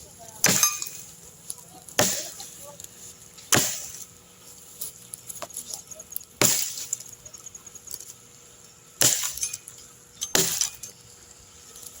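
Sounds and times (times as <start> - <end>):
machete chopping wood: 0.4 - 0.9, 2.0 - 2.4, 3.5 - 4.0, 6.4 - 6.8, 9.0 - 9.5, 10.3 - 10.8.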